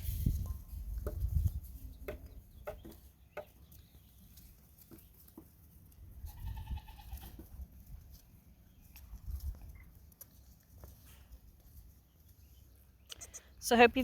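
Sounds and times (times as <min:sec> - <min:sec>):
goat bleating: 0:06.3 - 0:07.5.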